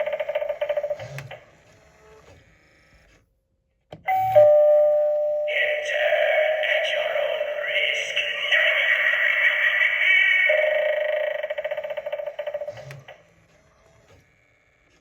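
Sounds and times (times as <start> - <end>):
ding-dong doorbell chime: 4.1 - 5.5.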